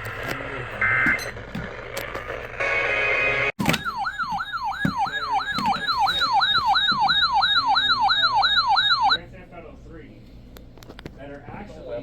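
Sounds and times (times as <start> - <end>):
electronic yelp siren: 2.6 - 9.2.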